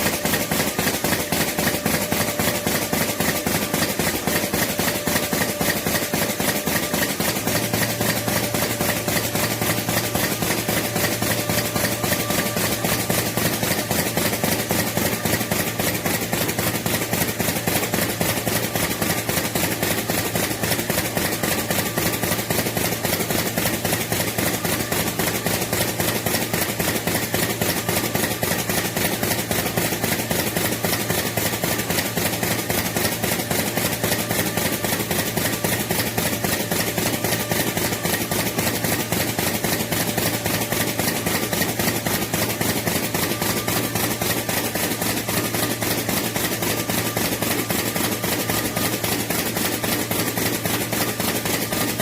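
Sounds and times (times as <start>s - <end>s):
machine hum: 0.0s - 18.2s
machine clattering: 0.0s - 52.0s.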